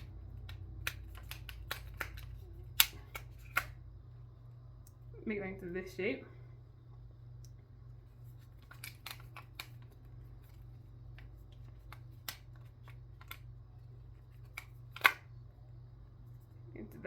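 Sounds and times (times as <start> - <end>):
fidget cube clicking and snapping: 0.0 - 3.8, 8.4 - 13.5, 14.1 - 15.3.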